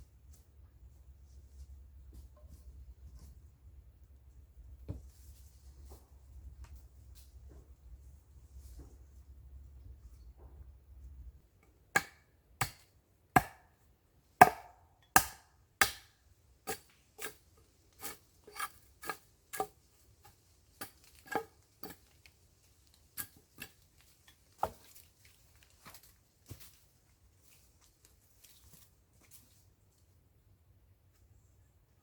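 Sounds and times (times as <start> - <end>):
hand tool chopping wood: 11.9 - 13.7, 14.4 - 17.4, 18.0 - 22.1.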